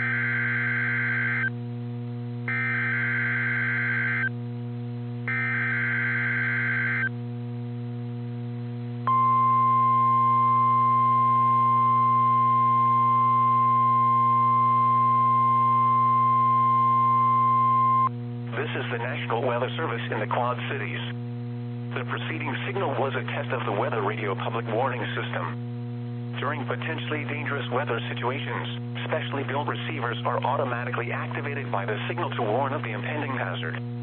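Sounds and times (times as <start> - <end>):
steady alarm tone: 0.0 - 1.5, 2.5 - 4.3, 5.3 - 7.1
low hum: 0.0 - 34.0.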